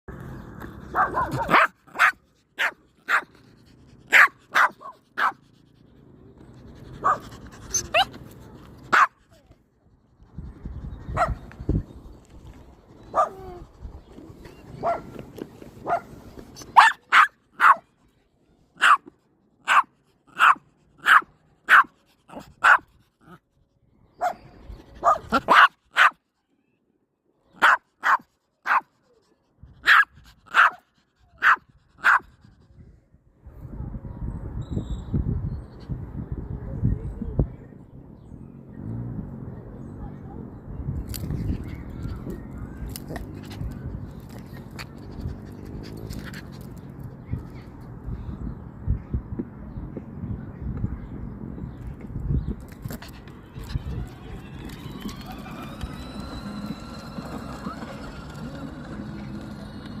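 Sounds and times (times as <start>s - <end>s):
puppy barking in high yaps: 0.9s - 3.3s, 4.1s - 5.4s, 8.9s - 9.2s, 16.6s - 17.8s, 18.8s - 21.9s, 25.0s - 26.2s, 27.6s - 28.9s, 29.8s - 30.8s, 31.4s - 32.2s.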